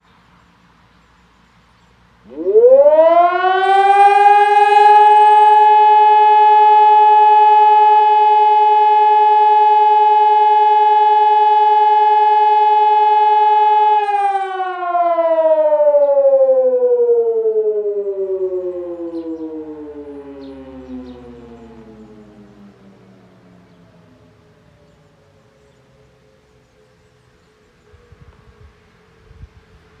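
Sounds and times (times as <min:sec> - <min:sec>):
electromechanical siren tone: 0:02.2 - 0:25.1.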